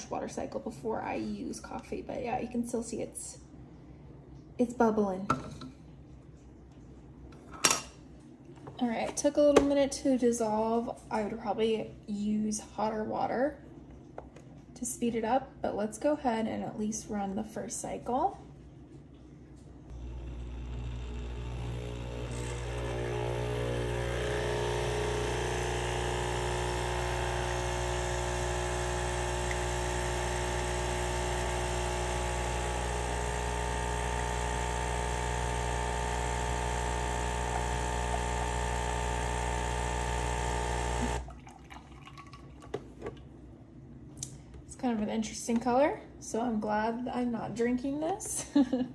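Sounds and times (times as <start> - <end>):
espresso machine pump humming: 19.9 - 41.3.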